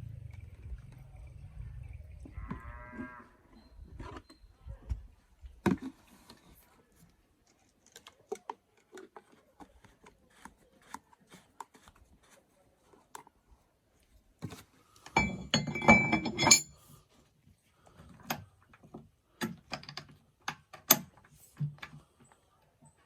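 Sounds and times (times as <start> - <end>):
cow mooing: 2.3 - 3.5.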